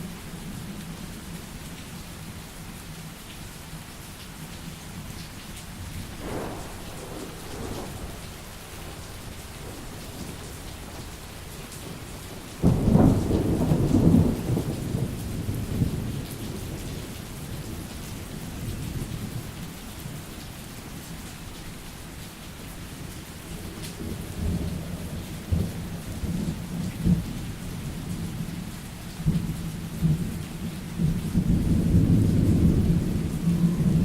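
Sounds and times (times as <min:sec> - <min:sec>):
steady rain falling: 0:00.0 - 0:34.0
thunder crack and rumble: 0:06.0 - 0:18.0, 0:31.0 - 0:34.0.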